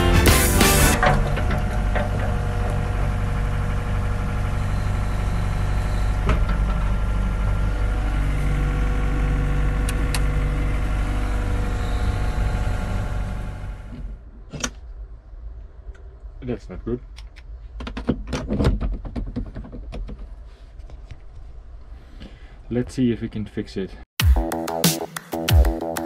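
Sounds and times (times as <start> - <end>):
diesel engine idling: 0.0 - 13.9.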